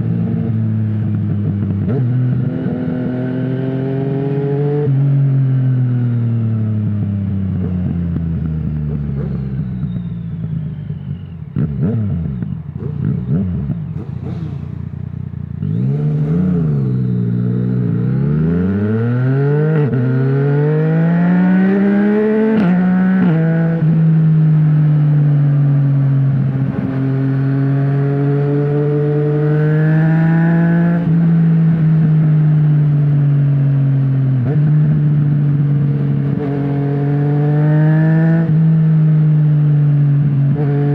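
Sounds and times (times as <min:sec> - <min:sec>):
motorcycle engine revving: 0:00.0 - 0:40.9
exhaust crackles: 0:11.6 - 0:18.3.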